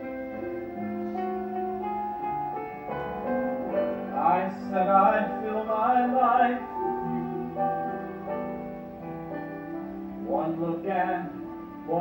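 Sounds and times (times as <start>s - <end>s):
instrumental accompaniment chords: 0.0s - 12.0s
person singing with vibrato: 3.8s - 12.0s.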